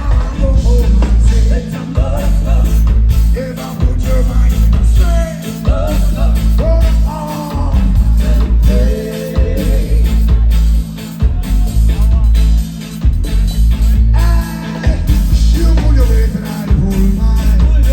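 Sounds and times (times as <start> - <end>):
lead vocal singing: 0.0 - 12.7, 14.1 - 17.9
heavy pulsing bass line: 0.0 - 17.9
reggae band music: 0.0 - 17.9.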